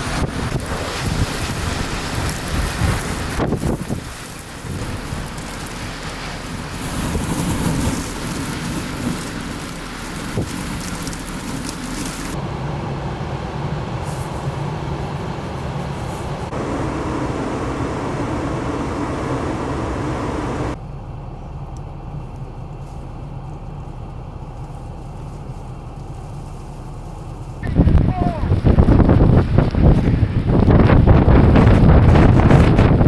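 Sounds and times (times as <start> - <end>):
blizzard wind: 0.0 - 20.8, 26.8 - 33.0
vehicle engines running: 0.0 - 31.6
steady low hum: 12.3 - 20.8.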